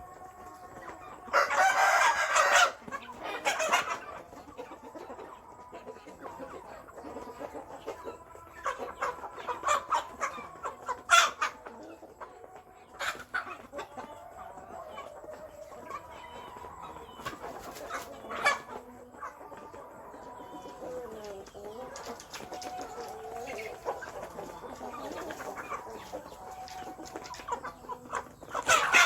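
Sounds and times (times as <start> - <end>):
chickens clucking: 0.0 - 29.0
rooster crowing: 1.2 - 2.8.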